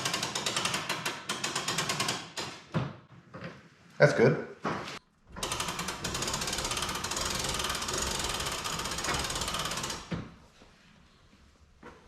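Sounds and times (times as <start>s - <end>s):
crank ratchet clicking: 5.4s - 10.1s.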